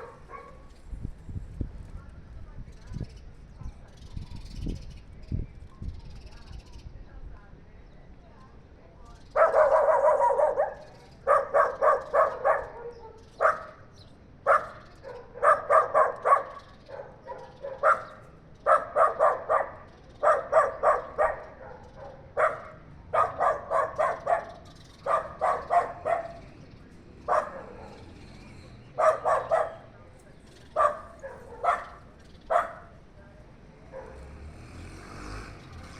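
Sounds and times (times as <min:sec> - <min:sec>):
dog barking: 0:00.0 - 0:00.7, 0:09.3 - 0:26.6, 0:27.2 - 0:28.2, 0:28.8 - 0:30.0, 0:30.7 - 0:33.0, 0:33.8 - 0:34.3.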